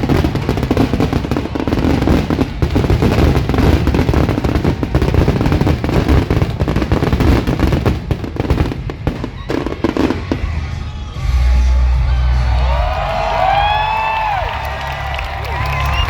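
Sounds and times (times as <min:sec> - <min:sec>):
fireworks bangs and crackles: 0:00.0 - 0:11.3.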